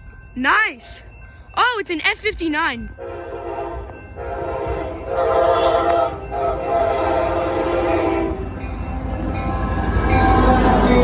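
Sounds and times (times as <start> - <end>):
locomotive horn blasts: 3.0 - 8.5.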